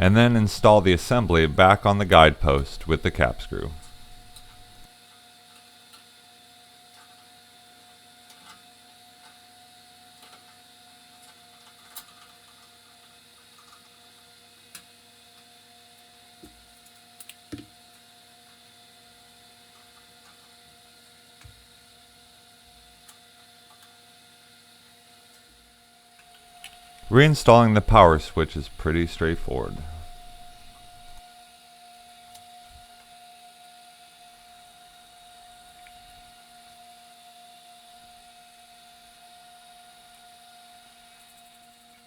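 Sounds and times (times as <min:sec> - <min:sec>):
faint electrical hum: 0:00.0 - 0:04.9, 0:27.0 - 0:31.2.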